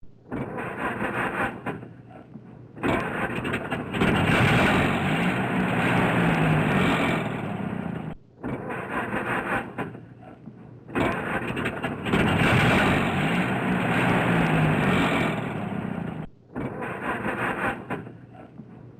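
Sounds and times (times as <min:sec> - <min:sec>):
car engine starting and revving: 0:02.8 - 0:08.2, 0:11.0 - 0:16.3
second engine running: 0:02.8 - 0:08.2, 0:11.0 - 0:16.3.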